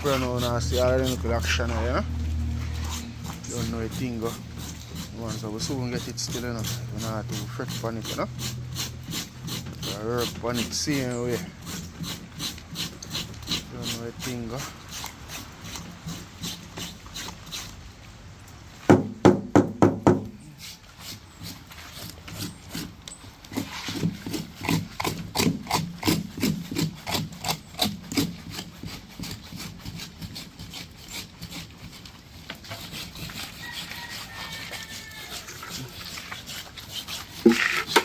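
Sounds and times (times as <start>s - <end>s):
knife scraping and cutting fish: 0.0s - 17.8s, 20.6s - 38.0s
loud knocks on wood: 18.9s - 20.3s.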